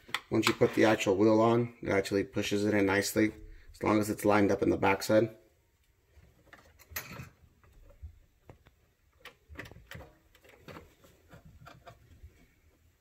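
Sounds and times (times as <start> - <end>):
plastic parts clicking and knocking: 6.3 - 12.4.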